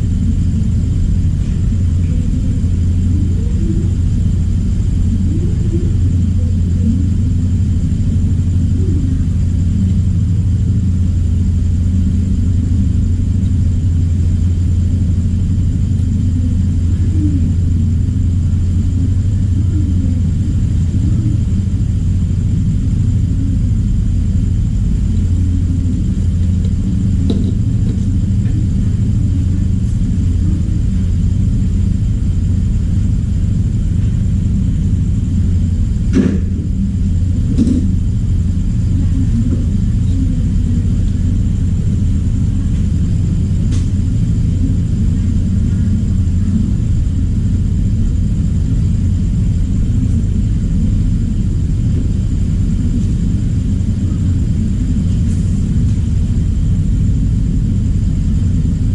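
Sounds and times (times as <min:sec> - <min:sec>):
steady low hum: 0:00.0 - 0:58.9.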